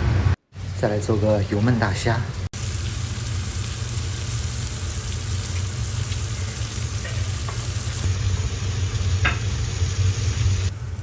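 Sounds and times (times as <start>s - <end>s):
range hood fan hum: 0.0s - 11.0s
prawns sizzling in hot oil: 2.5s - 10.7s.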